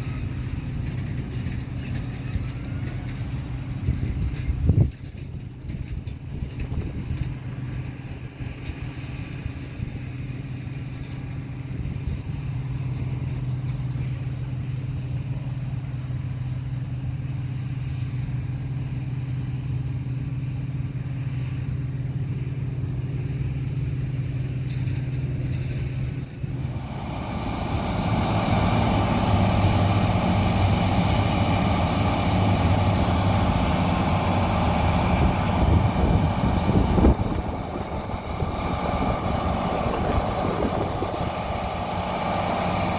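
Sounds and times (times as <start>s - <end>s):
diesel machinery running: 25.2s - 42.9s.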